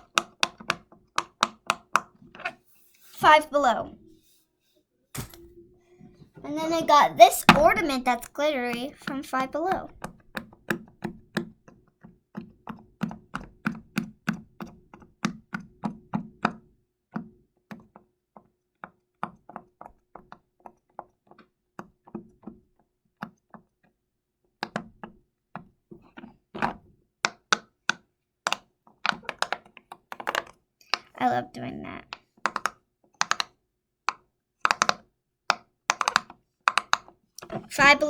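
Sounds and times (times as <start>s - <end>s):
pop-it toy bubbles popping: 7.3s - 11.5s, 35.9s - 37.0s.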